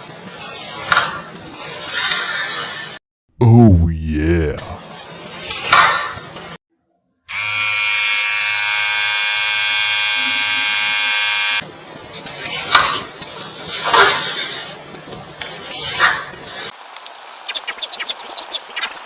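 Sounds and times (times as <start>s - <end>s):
loud electric buzz: 7.3s - 11.6s.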